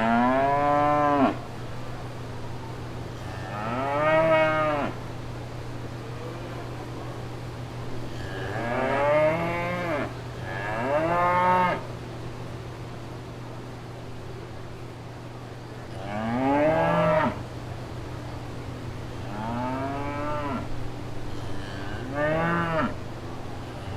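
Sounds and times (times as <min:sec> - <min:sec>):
steady low hum: 0:00.0 - 0:23.9
cow mooing: 0:03.4 - 0:05.0, 0:08.2 - 0:11.8, 0:16.0 - 0:17.4, 0:19.3 - 0:20.7, 0:21.5 - 0:23.0.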